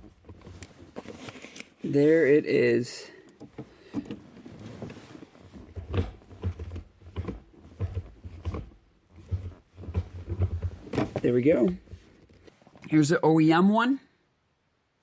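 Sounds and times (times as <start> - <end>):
handling clicks and rustles: 0.0 - 13.0.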